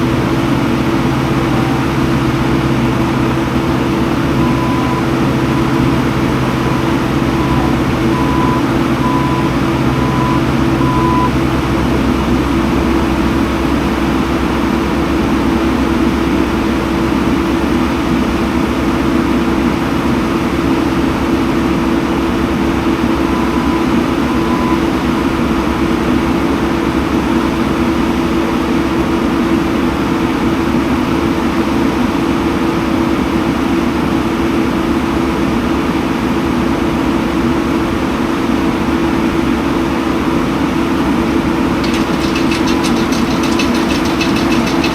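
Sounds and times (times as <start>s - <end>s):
diesel engine running: 0.0s - 28.9s, 39.7s - 44.9s
faint beeping: 0.1s - 11.8s.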